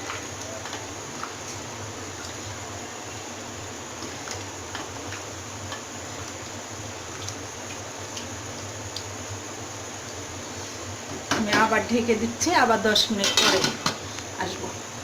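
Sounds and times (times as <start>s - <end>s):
curry simmering in a pot: 0.0s - 11.5s.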